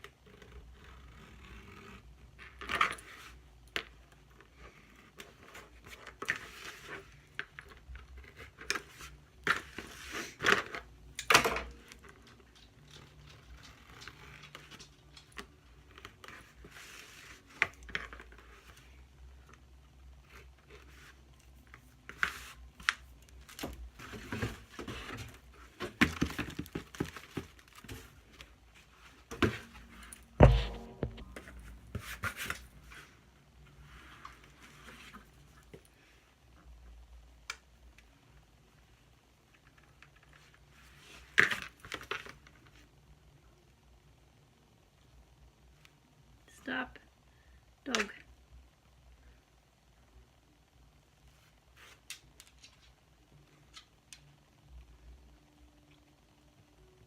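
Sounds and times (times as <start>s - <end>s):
sharp knock: 30.4s - 31.6s.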